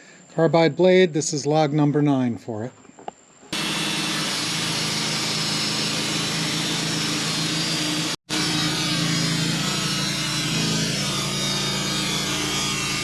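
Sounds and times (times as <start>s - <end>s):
saw blade cutting log: 3.5s - 13.0s
sawmill engine humming: 3.6s - 13.0s.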